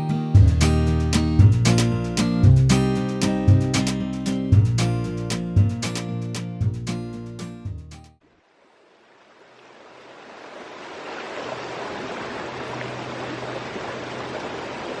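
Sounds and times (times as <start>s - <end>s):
acoustic guitar and bass music: 0.0s - 8.2s.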